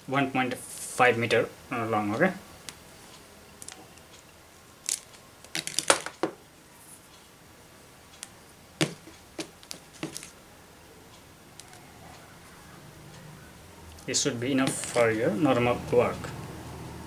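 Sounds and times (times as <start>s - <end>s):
cable clicks and rustles: 2.7s - 6.4s, 8.1s - 10.4s.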